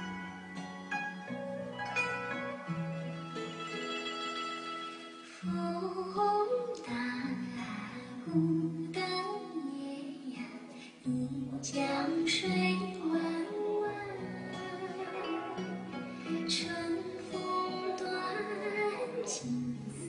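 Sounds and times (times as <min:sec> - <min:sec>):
sustained melodic notes: 0:00.0 - 0:05.4
person singing: 0:05.2 - 0:20.0.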